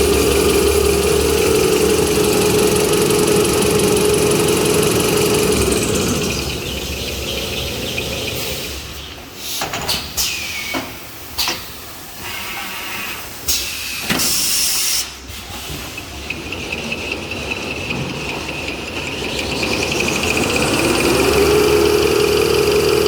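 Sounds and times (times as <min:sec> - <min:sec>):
machine mechanical drone: 0:00.0 - 0:09.0, 0:16.1 - 0:23.0
burst of hiss: 0:12.2 - 0:15.9.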